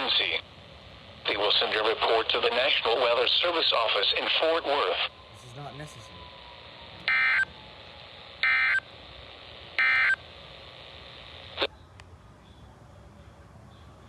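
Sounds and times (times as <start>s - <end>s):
warbling digital data tones: 5.1s - 11.6s.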